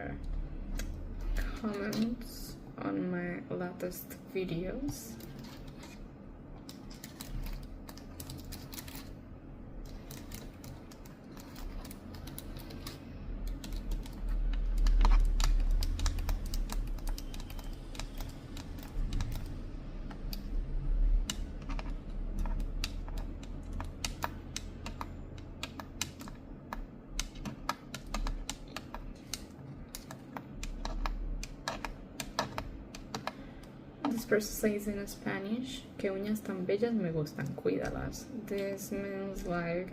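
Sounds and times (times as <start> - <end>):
low hum: 0.0 - 27.4
fingernails typing on keyboard: 6.6 - 9.2, 9.8 - 33.7.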